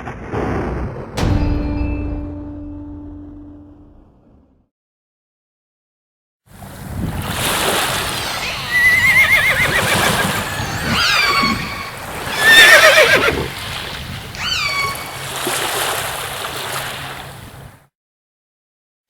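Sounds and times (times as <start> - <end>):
horses whinnying: 8.2 - 13.6, 14.3 - 15.4.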